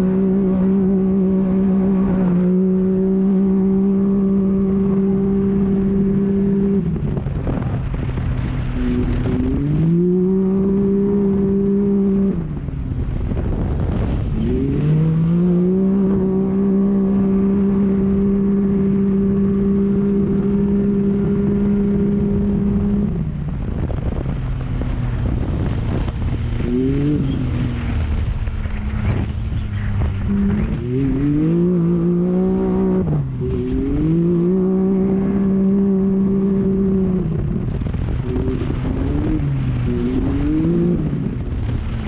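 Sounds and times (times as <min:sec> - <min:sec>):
race vehicle engine revving: 0:00.0 - 0:42.0
rumble of rough ground: 0:00.0 - 0:42.0.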